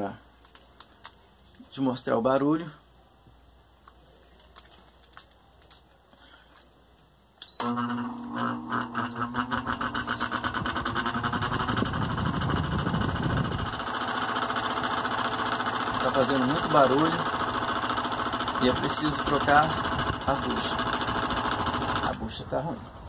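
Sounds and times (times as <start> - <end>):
electric fan motor rattling: 7.6 - 23.0.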